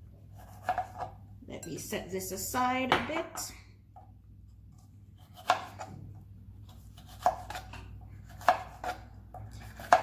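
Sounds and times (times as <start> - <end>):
knife cutting on cutting board: 0.3 - 1.2, 5.2 - 6.0, 6.6 - 10.0.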